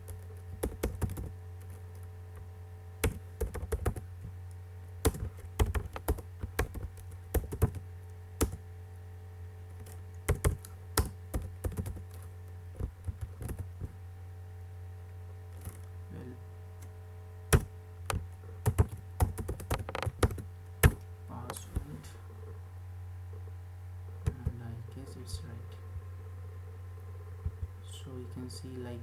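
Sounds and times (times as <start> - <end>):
keyboard typing: 0.0 - 1.8, 3.0 - 4.0, 5.0 - 7.8, 9.8 - 13.9, 17.5 - 21.6
steady low hum: 0.0 - 29.0.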